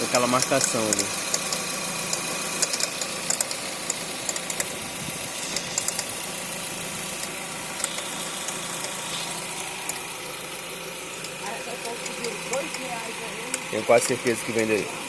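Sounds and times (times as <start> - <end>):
car engine idling: 0.0 - 15.0
sharp clicks from engine: 0.2 - 4.8, 5.5 - 6.3, 7.1 - 10.0, 11.2 - 12.9, 13.5 - 14.2.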